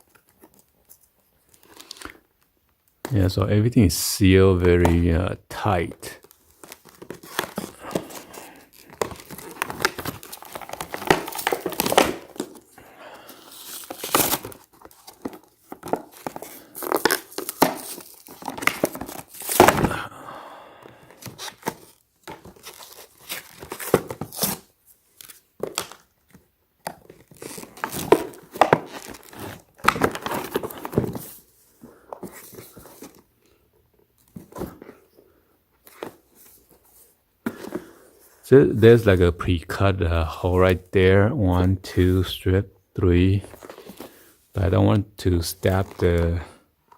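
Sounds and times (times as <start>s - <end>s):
plastic packaging crinkling and tearing: 0.0s - 2.2s, 6.2s - 20.0s, 21.1s - 31.4s.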